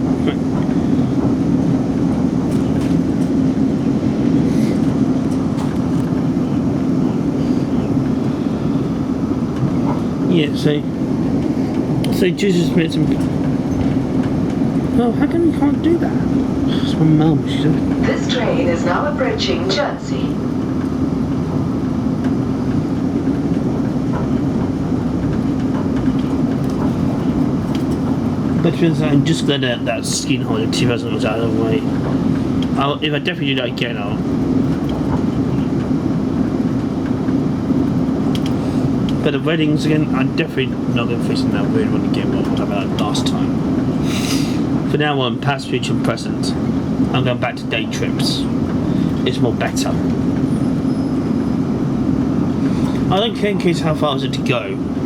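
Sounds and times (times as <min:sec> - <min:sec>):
constant low hum: 0:00.0 - 0:55.0
train interior rumble: 0:00.0 - 0:55.0
faint clicks: 0:38.3 - 0:39.2.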